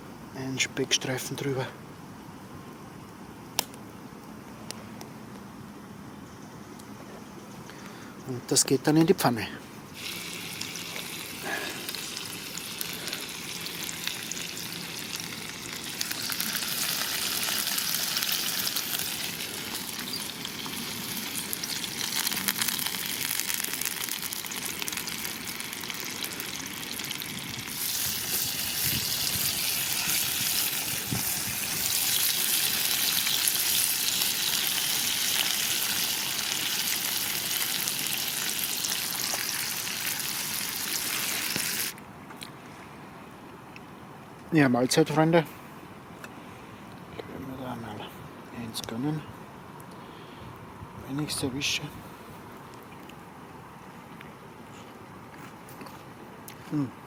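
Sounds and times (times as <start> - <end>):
food sizzling in a frying pan: 10.0 - 42.0.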